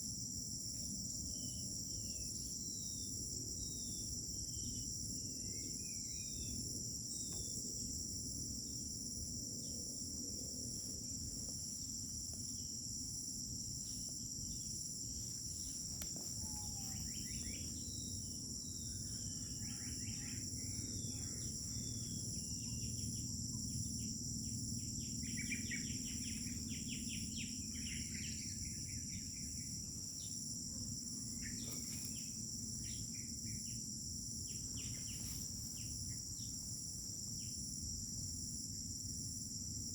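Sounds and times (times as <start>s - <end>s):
crickets trilling: 0.0s - 39.9s.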